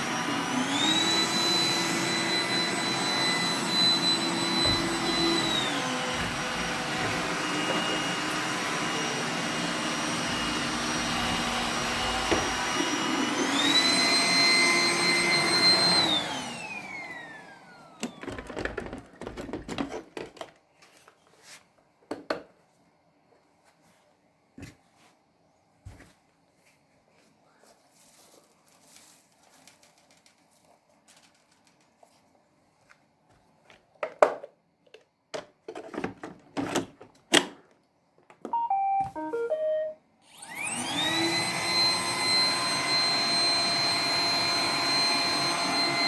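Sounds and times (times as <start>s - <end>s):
robot vacuum motor whine: 0.0s - 18.8s, 38.5s - 46.0s.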